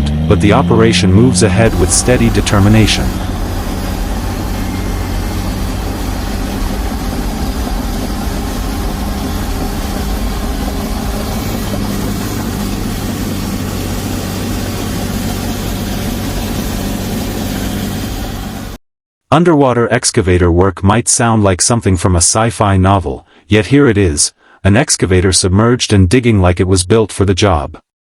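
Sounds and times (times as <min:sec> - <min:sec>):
bulldozer diesel engine droning: 0:00.0 - 0:18.8.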